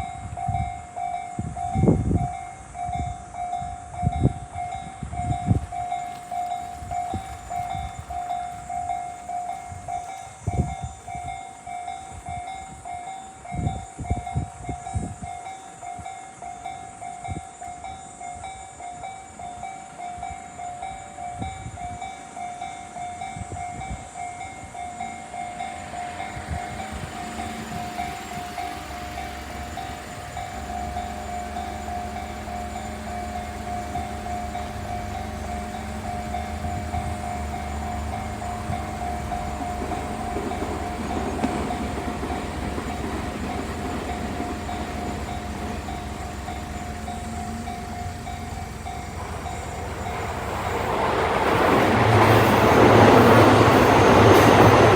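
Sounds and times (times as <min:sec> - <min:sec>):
train wheel and motor rumble: 0:00.0 - 0:54.9
train rushing noise: 0:01.4 - 0:16.1, 0:22.9 - 0:54.9
level-crossing bell dinging: 0:15.3 - 0:54.9.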